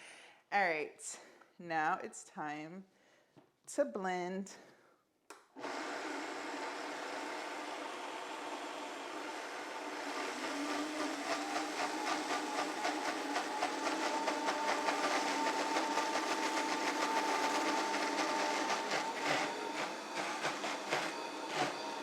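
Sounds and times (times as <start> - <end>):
blender rattle: 5.6 - 22.0
blender running: 5.6 - 22.0.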